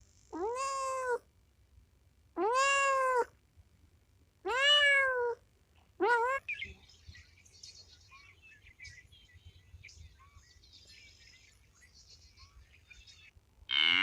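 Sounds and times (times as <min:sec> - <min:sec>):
cat meowing: 0:00.4 - 0:01.2, 0:02.4 - 0:03.3, 0:04.5 - 0:05.4, 0:06.0 - 0:06.5.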